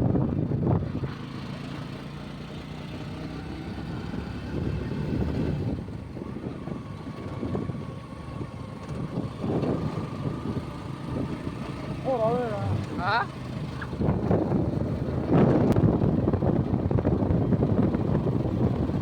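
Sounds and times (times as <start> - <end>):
motorcycle engine rumbling: 0.0 - 19.0.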